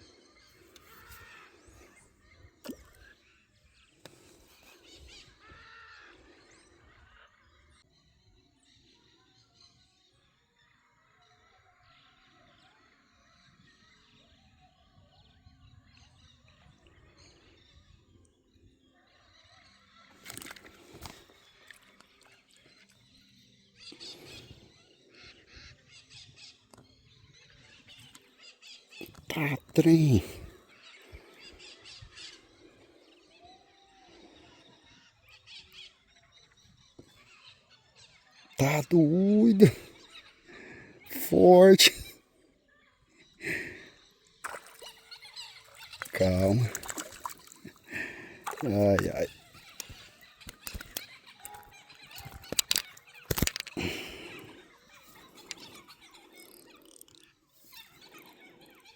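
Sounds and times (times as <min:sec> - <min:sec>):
faint outdoor ambience: 0:38.6 - 0:58.7
small bird chirps: 0:42.8 - 0:58.9.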